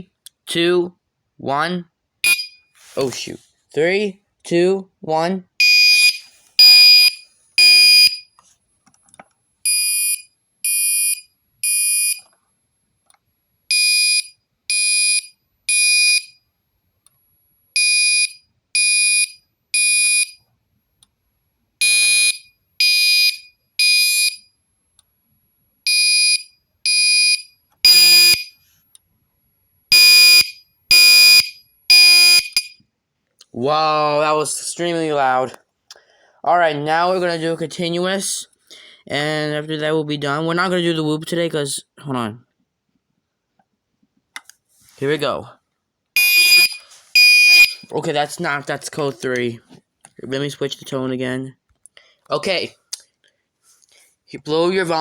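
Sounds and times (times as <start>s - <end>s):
fire alarm horn blasts: 2.2s - 2.6s, 5.6s - 8.2s, 21.8s - 24.4s, 25.9s - 28.6s, 29.9s - 32.8s, 46.2s - 47.8s.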